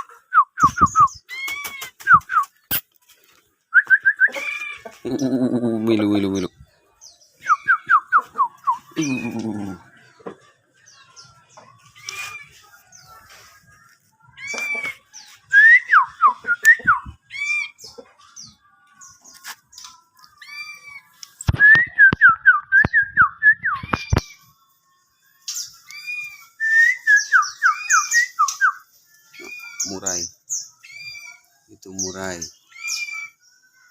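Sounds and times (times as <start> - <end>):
bird singing whistled notes: 0.3 - 2.8, 3.7 - 4.4, 6.4 - 9.8, 14.4 - 17.9, 25.4 - 33.6.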